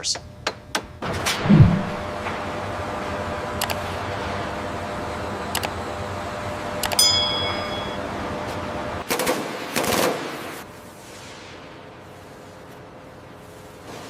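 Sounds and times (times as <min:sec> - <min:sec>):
steady hum: 0:00.0 - 0:09.1.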